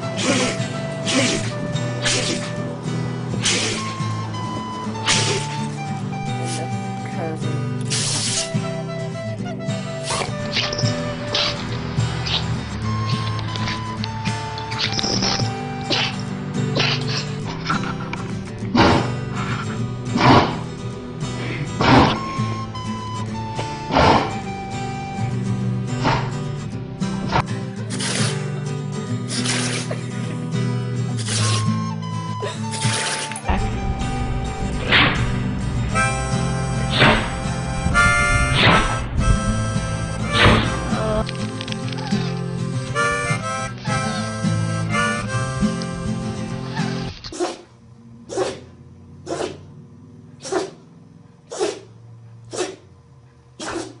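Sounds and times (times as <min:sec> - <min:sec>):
acoustic guitar music: 0:00.0 - 0:47.3
dog sneezing: 0:02.0 - 0:02.5, 0:03.4 - 0:03.9, 0:07.9 - 0:08.5, 0:49.3 - 0:49.6, 0:51.5 - 0:51.9, 0:53.6 - 0:54.0.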